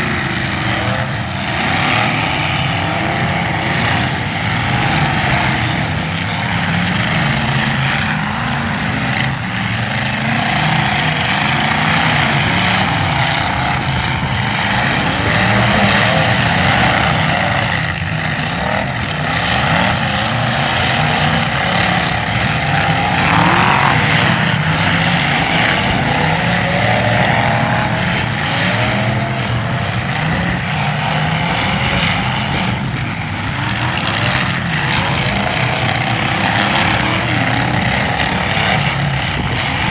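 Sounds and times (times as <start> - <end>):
car engines revving: 0.0 - 39.9.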